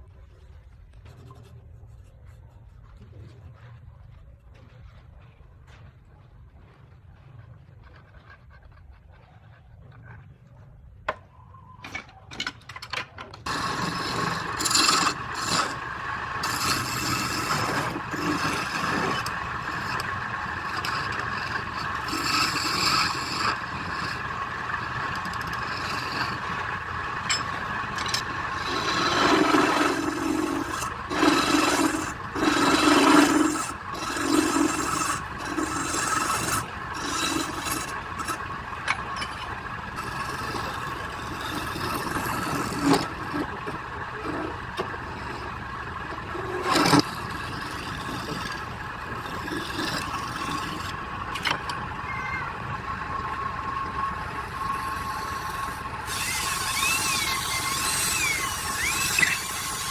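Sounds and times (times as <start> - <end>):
wood scraping and rubbing: 12.0 - 51.8, 53.2 - 59.9
lathe machine hum: 13.4 - 59.9.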